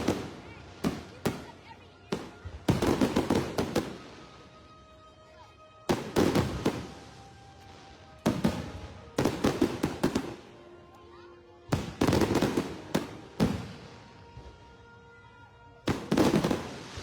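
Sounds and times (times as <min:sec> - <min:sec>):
fireworks bangs and crackling: 0:00.0 - 0:04.5, 0:05.9 - 0:10.6, 0:11.7 - 0:14.7, 0:15.8 - 0:17.0.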